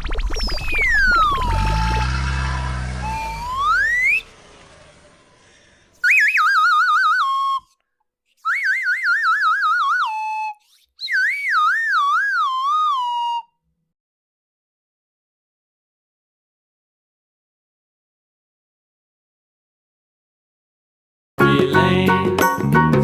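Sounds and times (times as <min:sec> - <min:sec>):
whistle-like warbling tones: 0:00.0 - 0:04.9, 0:06.0 - 0:07.8, 0:08.4 - 0:13.5.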